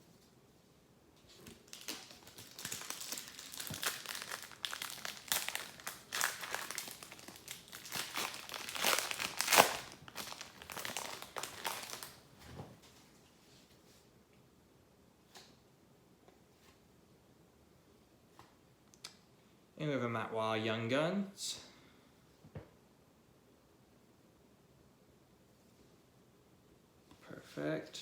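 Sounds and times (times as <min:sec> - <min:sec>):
foil wrapper crinkling: 0:01.4 - 0:12.2.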